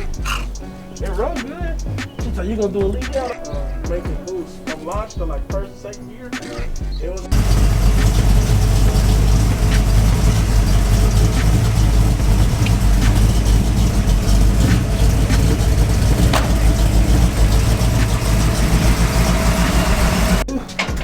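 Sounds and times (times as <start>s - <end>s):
car engine idling loudly: 7.3s - 20.4s.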